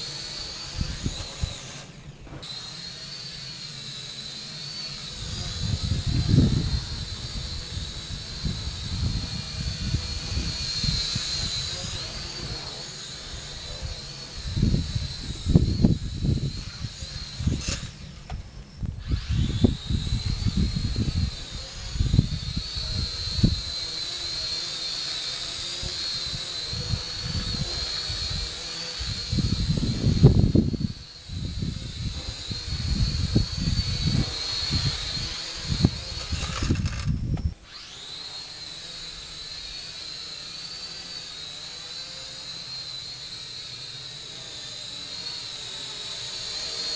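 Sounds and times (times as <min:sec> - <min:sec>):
drone motors whining: 0:00.0 - 0:46.9
wind buffeting microphone: 0:05.2 - 0:12.6, 0:13.7 - 0:23.8, 0:25.8 - 0:37.6.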